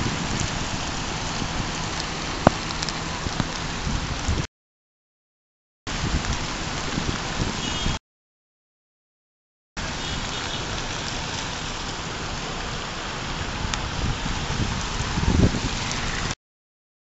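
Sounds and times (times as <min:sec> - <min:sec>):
rain falling: 0:00.0 - 0:04.5, 0:05.9 - 0:08.0, 0:09.8 - 0:16.4.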